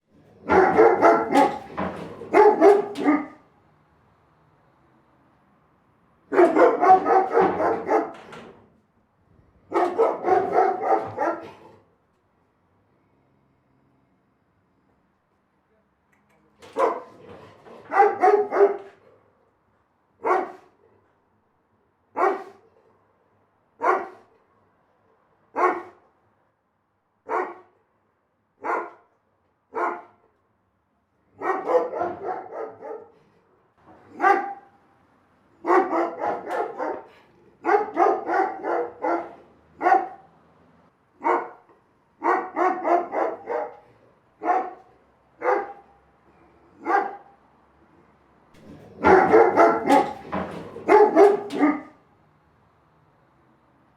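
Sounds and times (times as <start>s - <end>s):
big dog barking: 0.1s - 3.5s, 6.2s - 8.6s, 9.6s - 11.9s, 16.6s - 19.4s, 20.2s - 21.1s, 22.1s - 23.0s, 23.8s - 24.4s, 25.5s - 26.1s, 27.2s - 27.8s, 28.6s - 30.3s, 31.2s - 34.8s, 35.5s - 40.4s, 41.2s - 47.4s, 48.6s - 52.0s.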